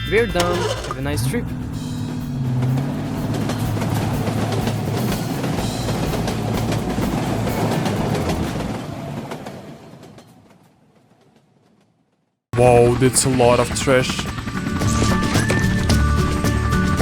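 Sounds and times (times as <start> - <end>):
cartoon background music: 0.0 - 7.2
vehicle rumble: 0.0 - 9.2.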